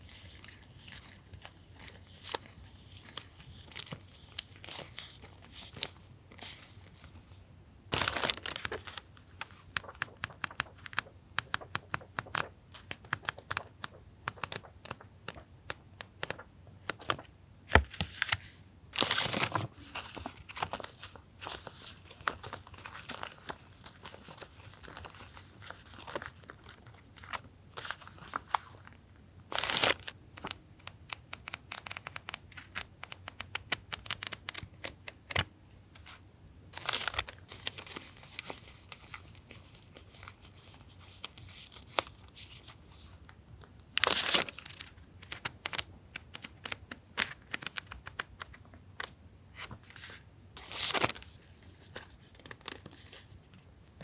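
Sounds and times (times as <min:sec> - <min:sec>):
paper rustling: 0:00.0 - 0:29.0, 0:44.0 - 0:53.7
paper sheet crinkling: 0:00.0 - 0:36.2, 0:36.8 - 0:53.7.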